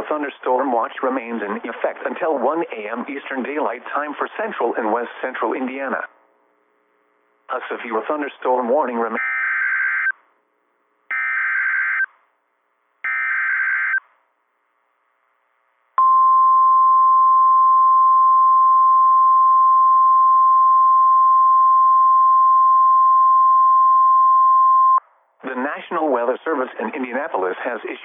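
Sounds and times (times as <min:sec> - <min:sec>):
steady warning alarm tone: 0:09.2 - 0:10.1, 0:11.1 - 0:12.1, 0:13.0 - 0:14.1.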